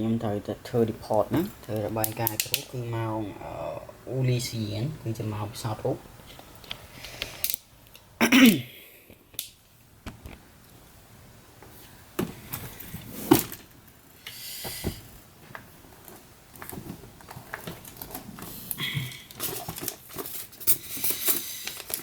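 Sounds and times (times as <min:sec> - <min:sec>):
rustling: 0:14.7 - 0:22.0.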